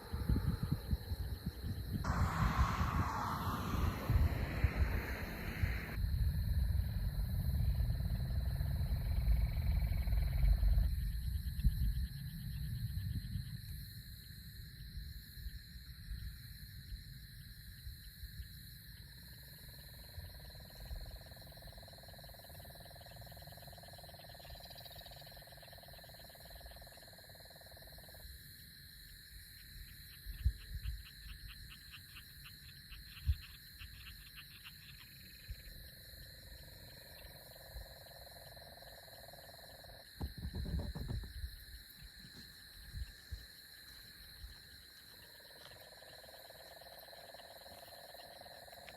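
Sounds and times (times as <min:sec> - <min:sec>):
thunder rumbling: 0:00.0 - 0:06.0
insects droning: 0:00.0 - 0:48.9
fast ticking insect calls: 0:20.1 - 0:28.2, 0:29.1 - 0:48.9.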